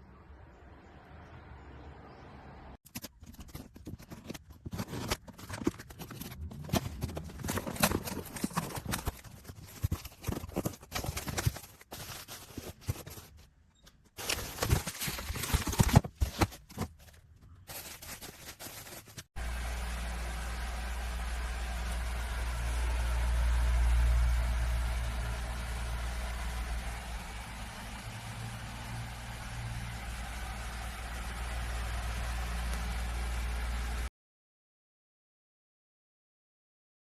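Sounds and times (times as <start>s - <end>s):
objects being handled: 2.8s - 19.4s.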